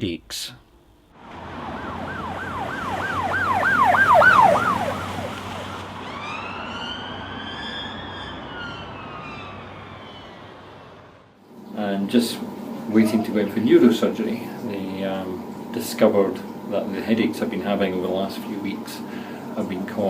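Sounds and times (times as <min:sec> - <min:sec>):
low traffic rumble: 0:00.0 - 0:15.6
ambulance siren: 0:01.2 - 0:11.3.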